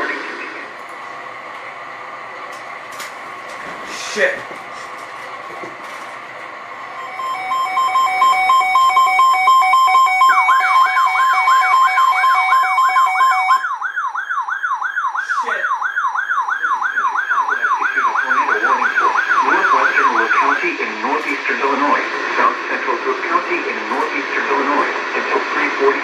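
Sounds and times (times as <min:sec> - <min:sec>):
warbling siren: 0:06.8 - 0:20.7
pulsing alert tone: 0:07.0 - 0:13.6.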